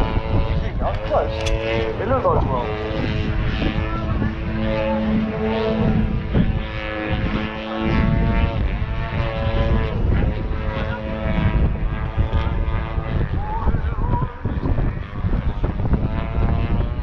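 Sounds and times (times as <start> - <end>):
low wind rumble: 0.0 - 17.0
model plane engine and propeller: 0.0 - 17.0.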